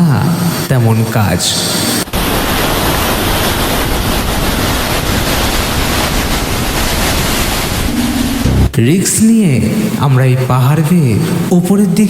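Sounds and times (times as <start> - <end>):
waterfall rushing: 2.0 - 8.7.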